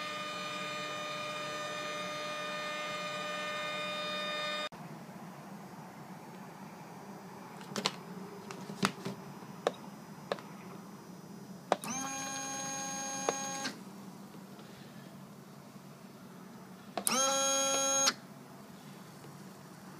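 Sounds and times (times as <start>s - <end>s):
turbine starter whining: 0.0s - 4.7s, 11.8s - 13.8s, 17.0s - 18.2s.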